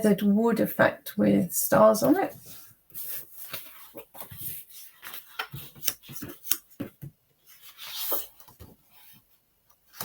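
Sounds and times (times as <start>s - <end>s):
paper sheets rustling: 2.2s - 10.0s.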